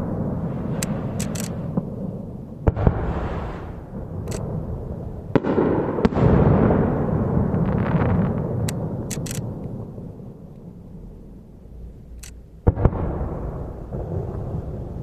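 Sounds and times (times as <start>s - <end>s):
rolling echo rumble: 0.0s - 15.0s
firework shells bursting: 0.6s - 2.0s.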